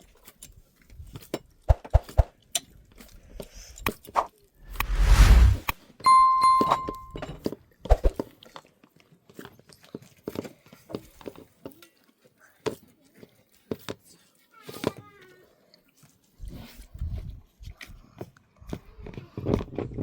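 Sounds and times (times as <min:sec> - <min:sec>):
short rush of noise: 0:04.7 - 0:07.1.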